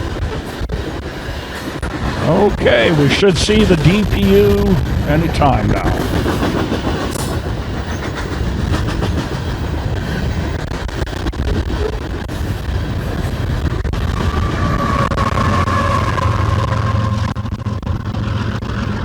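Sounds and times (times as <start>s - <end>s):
train wheels clicking over rail joints: 0.0s - 14.6s
steady whine: 2.2s - 6.2s.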